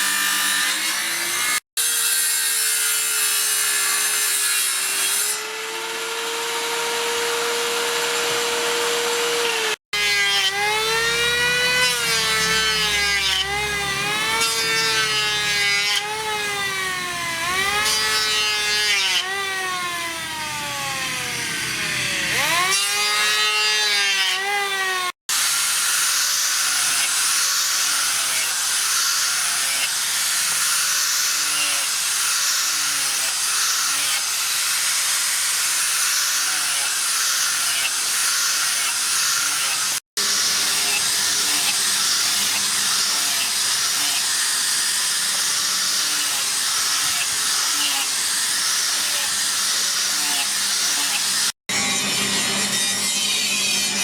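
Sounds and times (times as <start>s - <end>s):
power tool motor whining: 5.7s - 23.8s.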